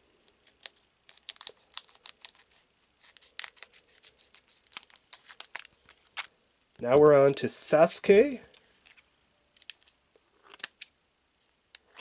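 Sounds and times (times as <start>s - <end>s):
trading card packaging crinkling: 0.4s - 6.3s.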